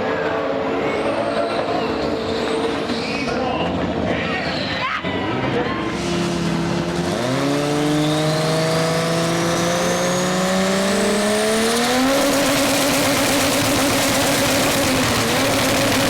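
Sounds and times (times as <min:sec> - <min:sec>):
drag racing engine revving: 0:05.2 - 0:16.0.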